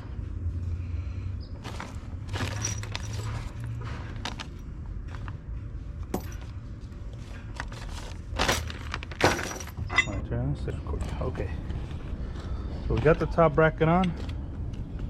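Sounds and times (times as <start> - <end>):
metal bolts clinking and rattling: 1.7 - 4.7, 6.0 - 6.6, 8.4 - 10.3.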